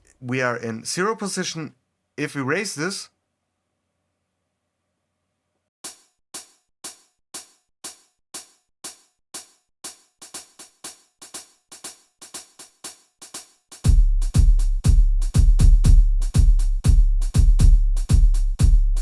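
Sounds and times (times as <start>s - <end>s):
drum machine hi-hat strikes: 5.8s - 19.0s.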